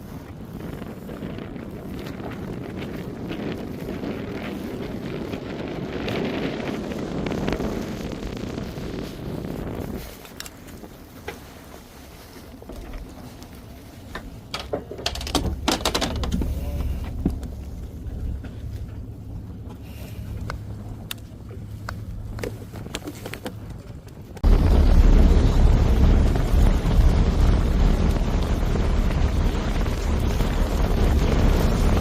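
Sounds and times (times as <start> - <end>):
low engine hum: 0.0 - 32.0
wind noise on microphone: 0.0 - 32.0
knocks and clicks on boat: 12.4 - 24.4.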